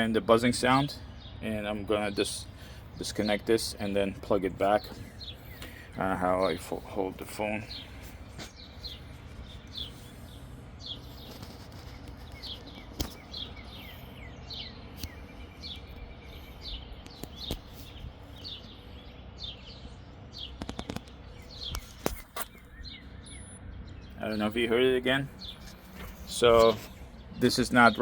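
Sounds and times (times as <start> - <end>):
small birds chirping: 0.0 - 28.0
sharp clicks: 20.5 - 22.7.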